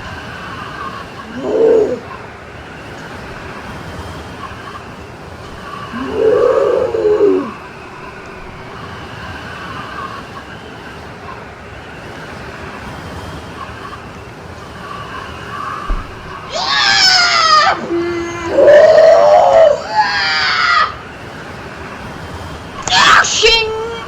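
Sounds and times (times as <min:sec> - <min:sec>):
steady hiss: 0:00.0 - 0:24.0
high-pitched screams sliding in pitch: 0:05.6 - 0:07.6, 0:15.7 - 0:21.2, 0:22.8 - 0:24.0.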